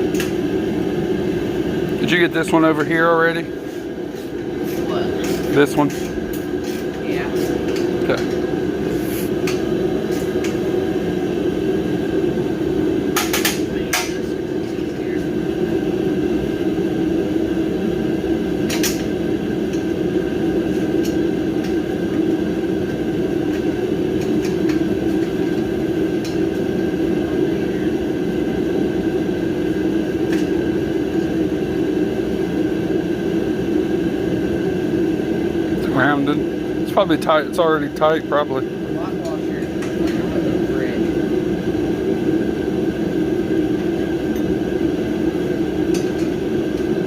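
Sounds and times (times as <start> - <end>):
blower humming: 0.0 - 47.0.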